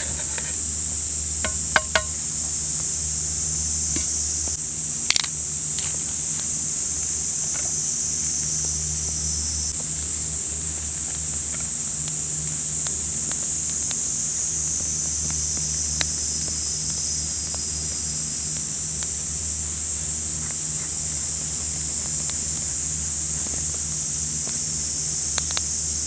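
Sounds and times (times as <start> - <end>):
cicadas droning: 0.0 - 26.0
faint scattered clicks: 18.4 - 26.0.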